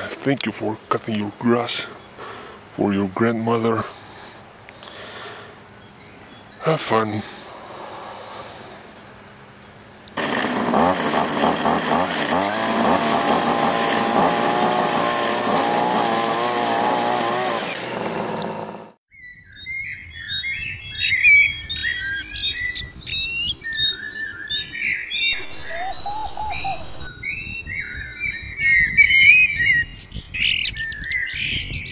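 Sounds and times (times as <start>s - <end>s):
birds chirping: 0.4s - 10.2s, 19.2s - 31.9s.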